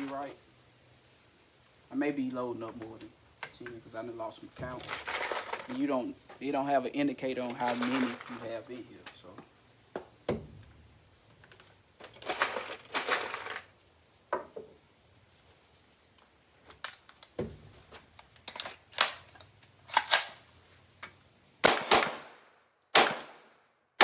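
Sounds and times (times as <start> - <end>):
handling clicks and rustling: 4.5 - 9.6, 11.2 - 13.8, 16.1 - 21.2
pistol shots with echo: 21.6 - 23.4.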